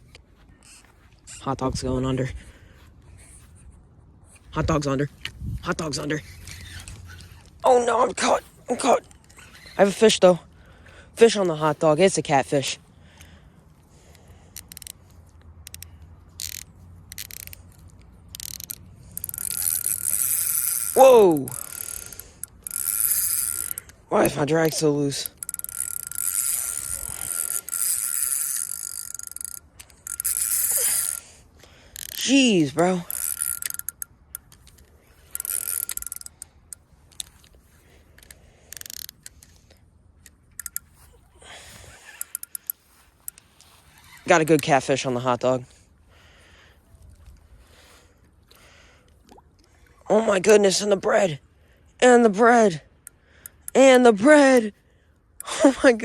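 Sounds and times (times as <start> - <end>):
fishing reel drag clicking: 4.3 - 45.4, 52.9 - 54.0.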